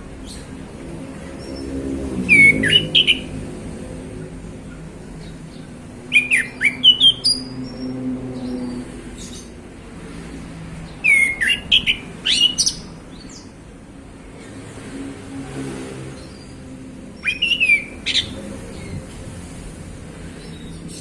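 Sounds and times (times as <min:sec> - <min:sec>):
thrush singing whistled notes: 0:02.3 - 0:03.3, 0:06.1 - 0:07.6, 0:11.0 - 0:13.5, 0:17.2 - 0:19.0.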